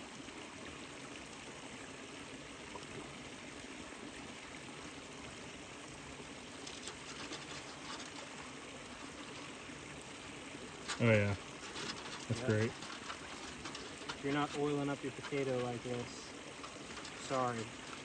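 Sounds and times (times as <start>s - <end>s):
creek flowing: 0.0s - 18.0s.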